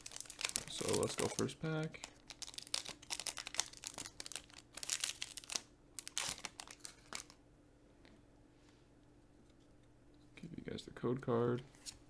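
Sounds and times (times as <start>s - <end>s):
foil wrapper crinkling and tearing: 0.0s - 7.4s.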